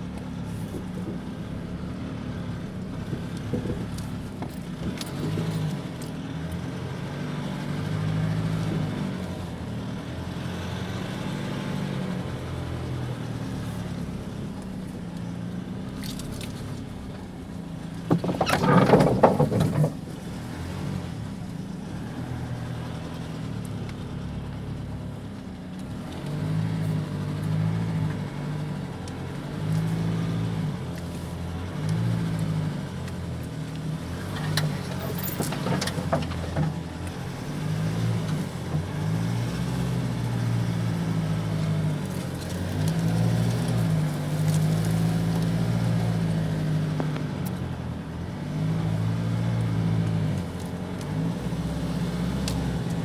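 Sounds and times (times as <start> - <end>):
diesel engine under load: 0.0 - 53.0.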